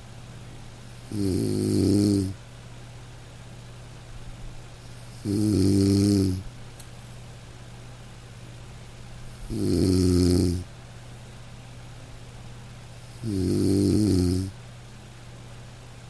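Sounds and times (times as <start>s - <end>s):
dog snoring: 0.9s - 2.4s, 4.8s - 6.5s, 9.3s - 10.7s, 13.0s - 14.6s.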